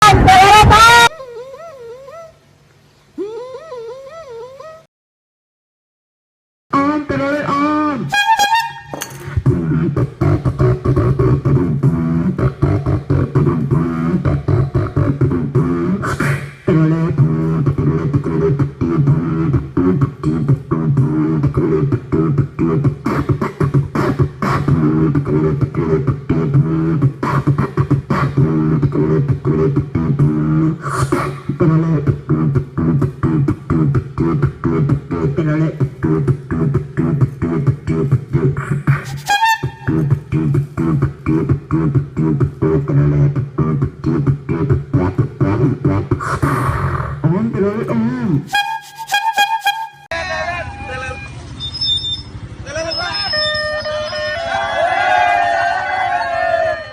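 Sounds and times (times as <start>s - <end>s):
woman beatboxing: 9.4s - 47.2s, 48.4s - 50.0s.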